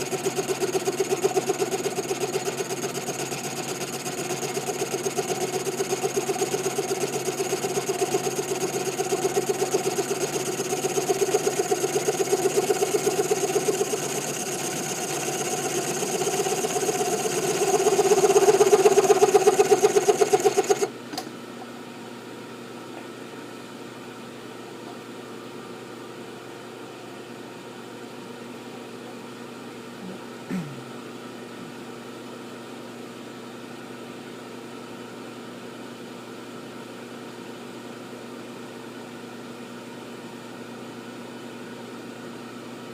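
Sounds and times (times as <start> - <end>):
small click: 21.1 - 21.3.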